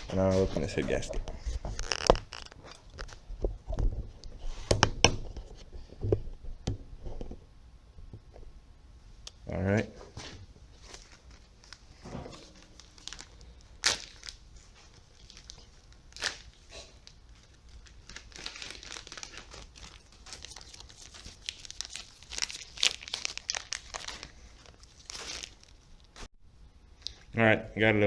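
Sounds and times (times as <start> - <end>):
packaging crinkling and tearing: 0.4 - 4.9, 10.8 - 26.2.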